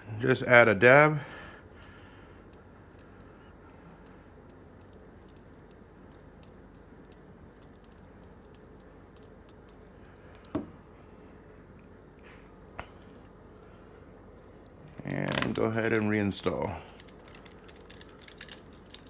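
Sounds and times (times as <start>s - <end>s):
small tools clicking: 4.0s - 10.5s, 14.5s - 19.0s.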